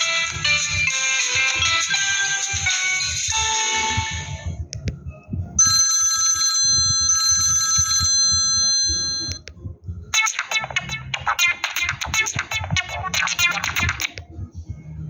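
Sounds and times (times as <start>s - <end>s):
electronic telephone ring tone: 5.6s - 9.4s
quick rhythmic ringtone melody: 5.6s - 9.4s, 10.1s - 14.2s.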